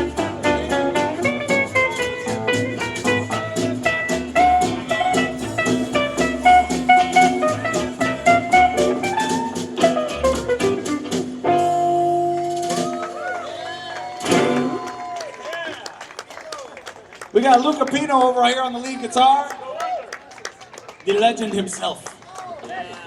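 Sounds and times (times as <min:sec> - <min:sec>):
lead guitar melody: 0:00.0 - 0:13.5, 0:14.3 - 0:14.9
bass guitar: 0:00.0 - 0:15.1
drum kit beat: 0:00.0 - 0:15.1.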